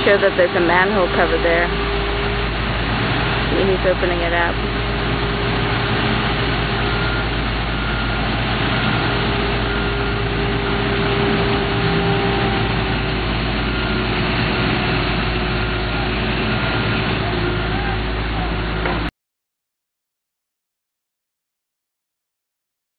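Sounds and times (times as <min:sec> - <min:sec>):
heavy diesel engines running: 0:00.0 - 0:19.1.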